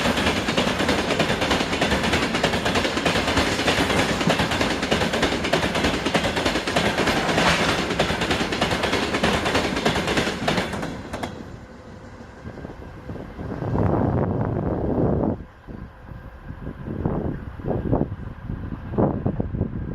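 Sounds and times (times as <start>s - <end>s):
train wheels clattering over rail joints: 0.0s - 11.6s.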